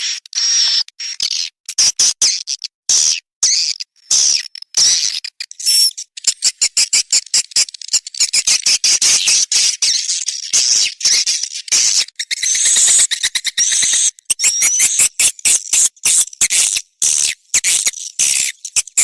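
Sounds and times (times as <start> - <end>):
swiftlet chattering calls: 12.4 - 16.4.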